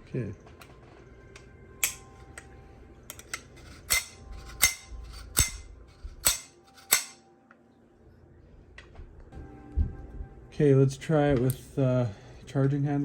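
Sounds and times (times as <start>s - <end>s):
rifle bolt parts clicking: 1.8s - 2.5s, 3.1s - 7.2s.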